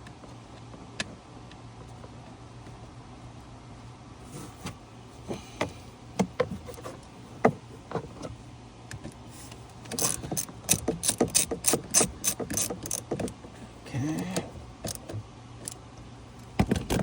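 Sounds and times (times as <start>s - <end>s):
hand tools clicking and knocking: 9.9s - 13.3s.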